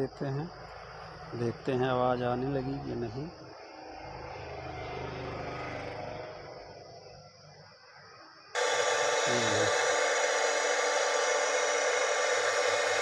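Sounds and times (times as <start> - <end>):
speaker static hiss: 8.6 - 13.0.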